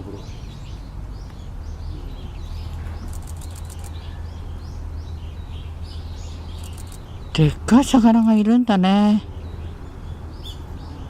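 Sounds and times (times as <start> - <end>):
small birds chirping: 0.0 - 11.0
sharp clicks: 3.0 - 4.0, 6.5 - 7.1.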